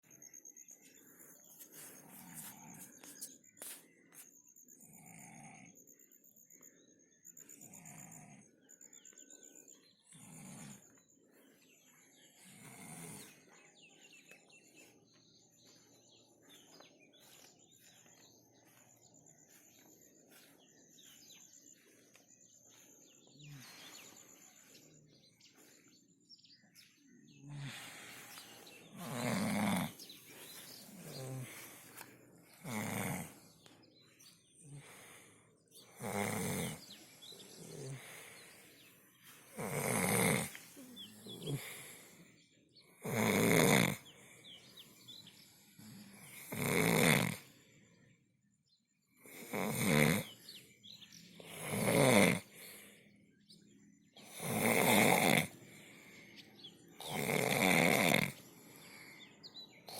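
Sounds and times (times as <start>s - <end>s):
quiet breaths: 0.0s - 59.9s
person snoring: 10.1s - 10.9s, 12.4s - 13.5s, 27.4s - 31.8s, 32.6s - 33.5s, 34.6s - 38.7s, 39.5s - 42.2s, 43.0s - 44.0s, 45.8s - 47.5s, 49.2s - 50.4s, 51.4s - 52.8s, 54.2s - 56.1s, 57.0s - 58.8s.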